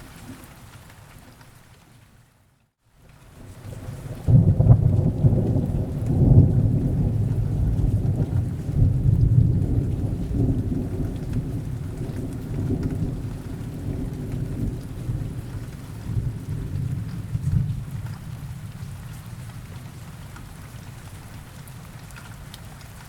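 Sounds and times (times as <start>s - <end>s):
steady falling rain: 0.0s - 23.0s
low roll of thunder: 3.4s - 20.6s.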